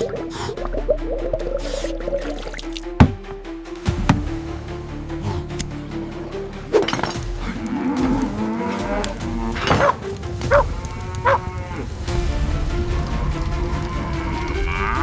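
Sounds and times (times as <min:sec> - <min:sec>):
light background tune: 0:00.0 - 0:15.0
cows mooing: 0:07.5 - 0:11.9.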